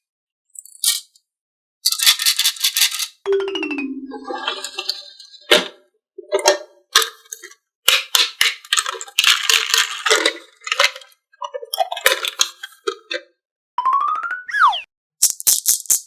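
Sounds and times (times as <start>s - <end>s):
marbles clattering down wooden track: 1.9s - 3.1s.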